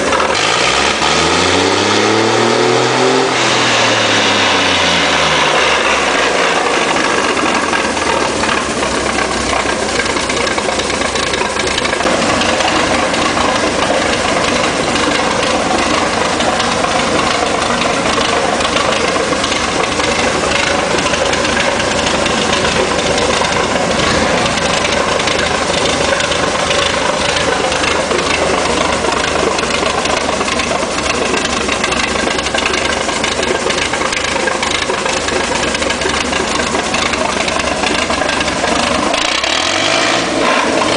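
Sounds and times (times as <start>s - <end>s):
engine idling: 0.0s - 40.9s.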